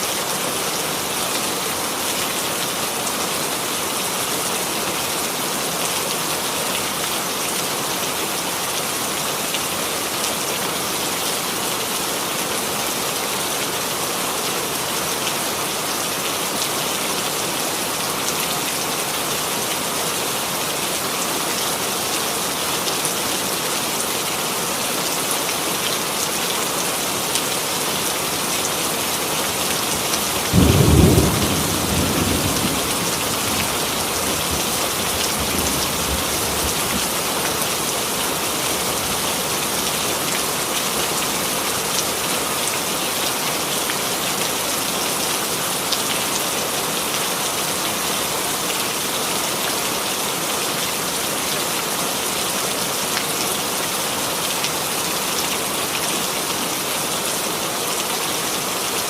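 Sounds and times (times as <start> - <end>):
heavy rain hissing: 23.6 - 42.6
thunderclap rumbling: 30.6 - 37.0.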